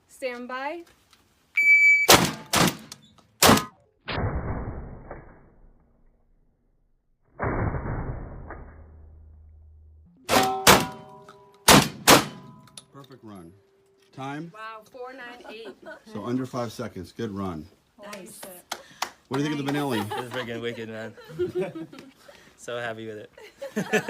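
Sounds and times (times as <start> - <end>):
shot timer beep: 1.6 - 2.2
gunshots in rapid string: 10.3 - 11.1, 11.7 - 12.5.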